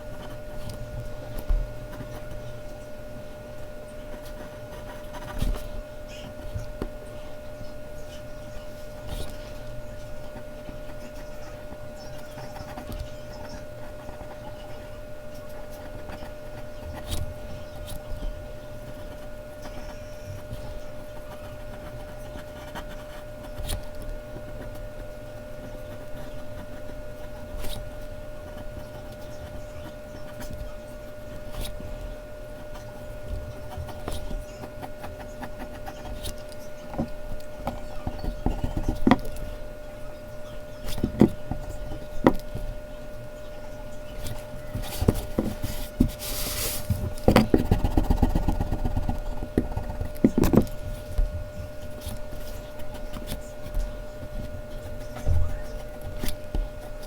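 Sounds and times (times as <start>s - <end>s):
faint hum: 0.0s - 57.0s
pencil tapping and clicking: 18.9s - 24.8s, 32.6s - 39.5s, 40.8s - 42.7s, 44.2s - 46.2s, 46.9s - 57.0s.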